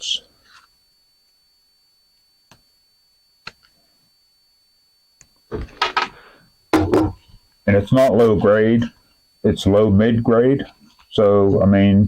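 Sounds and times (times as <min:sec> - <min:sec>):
clattering knocks: 0:06.8 - 0:07.3.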